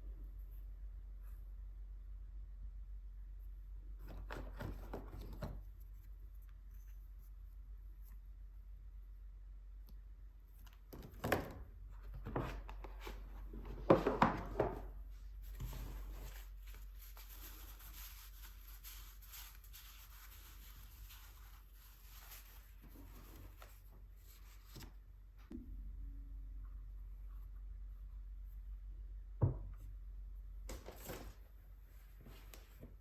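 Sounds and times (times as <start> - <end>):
knocks and rustles: 10.7 - 18.0
scratchy rubbing on paper: 15.5 - 23.4.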